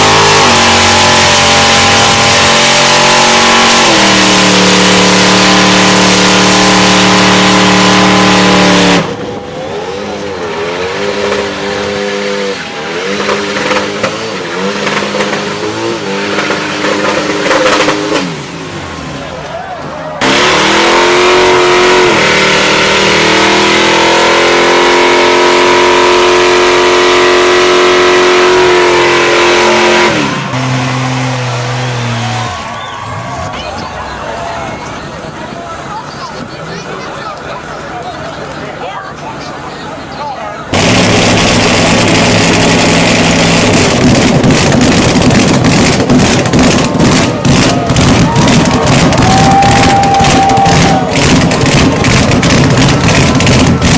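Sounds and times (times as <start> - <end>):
car engine revving: 0.0 - 19.4, 20.2 - 36.8, 40.6 - 53.9.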